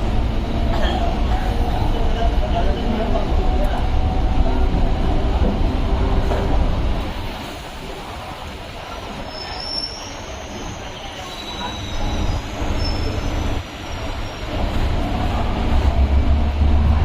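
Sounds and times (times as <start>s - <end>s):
train rumbling on rails: 0.0s - 17.0s
train wheels squealing: 9.3s - 14.5s.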